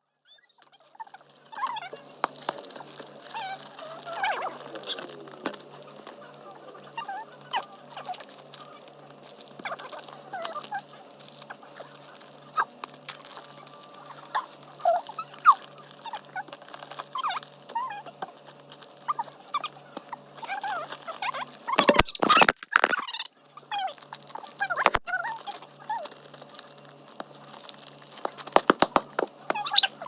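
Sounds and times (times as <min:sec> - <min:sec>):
slime squelching: 0:21.8 - 0:23.2, 0:24.8 - 0:25.1.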